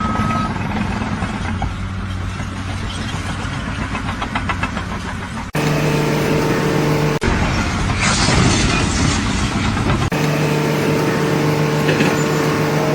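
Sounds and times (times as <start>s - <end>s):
engine running: 0.0s - 12.9s
steady hum: 5.6s - 8.0s, 10.1s - 12.9s.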